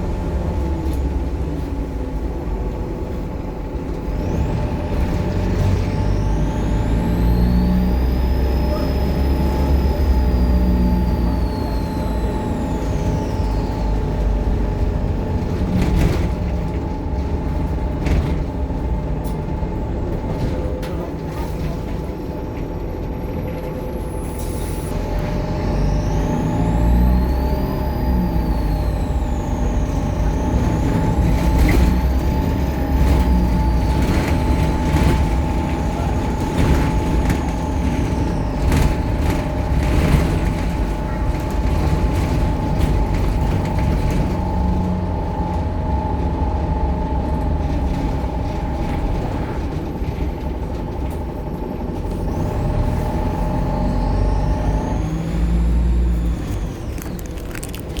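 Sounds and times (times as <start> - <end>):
bus diesel engine rumble: 0.0 - 58.0
turbo whine: 5.7 - 15.4, 24.2 - 40.2.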